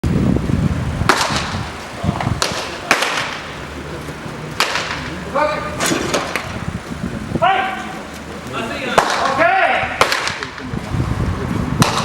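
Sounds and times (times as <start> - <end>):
baseballs smacking into mitts: 1.0 - 3.5, 4.6 - 5.2, 5.8 - 6.6, 8.9 - 9.4, 10.0 - 10.6, 11.8 - 12.0.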